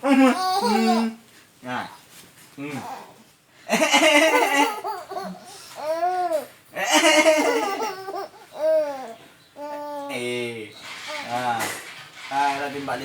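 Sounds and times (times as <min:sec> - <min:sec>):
baby laughing: 0:00.0 - 0:01.2, 0:03.7 - 0:10.1
baby squealing: 0:05.8 - 0:10.2, 0:10.9 - 0:11.4.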